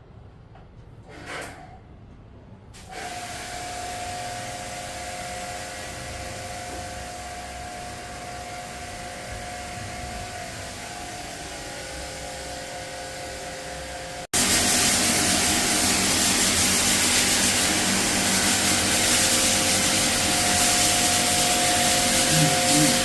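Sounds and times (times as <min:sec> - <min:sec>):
pressure washer pump whining: 0:02.9 - 0:23.0
water spraying hiss: 0:14.3 - 0:23.0.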